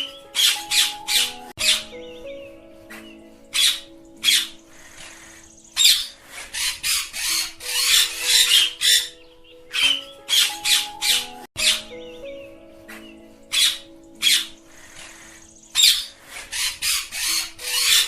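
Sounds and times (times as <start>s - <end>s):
parrots screeching: 5.8s - 9.1s, 15.8s - 18.0s.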